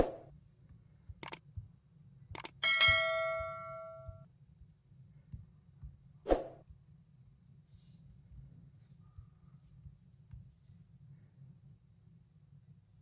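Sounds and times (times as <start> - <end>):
short clicks: 1.2 - 1.4, 2.3 - 2.6
bell-like chime: 2.6 - 4.2.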